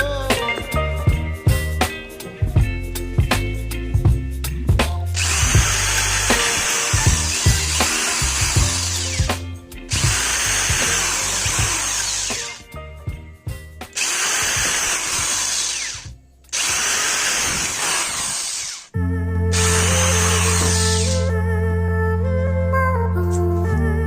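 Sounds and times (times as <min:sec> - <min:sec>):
power tool running: 0:05.2 - 0:12.6, 0:14.0 - 0:19.0, 0:19.6 - 0:21.3.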